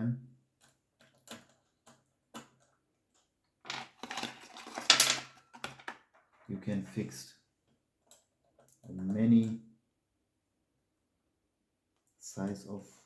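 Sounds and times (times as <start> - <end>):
metal clattering and scraping: 3.7 - 5.9.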